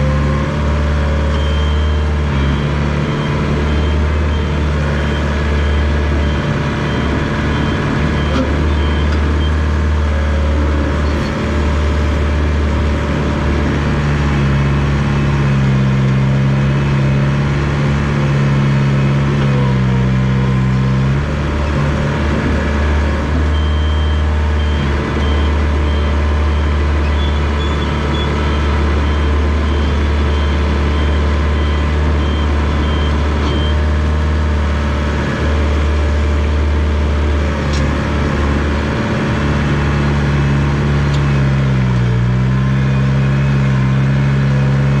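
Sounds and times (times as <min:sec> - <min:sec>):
bulldozer diesel engine running: 0:00.0 - 0:45.0
reversing alarm beeping: 0:01.2 - 0:09.7, 0:23.4 - 0:33.9.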